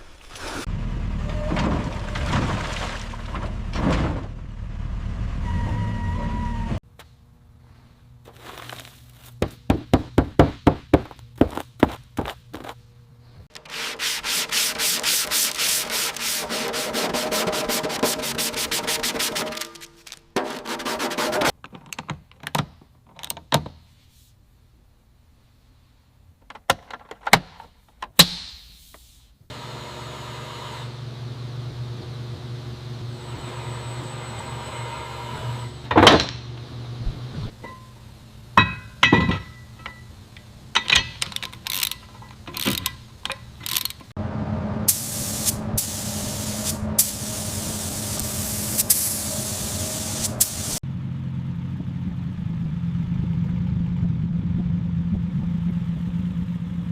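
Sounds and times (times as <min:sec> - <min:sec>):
metallic clanks and knocks: 0:37.6 - 0:38.0, 0:38.6 - 0:44.1.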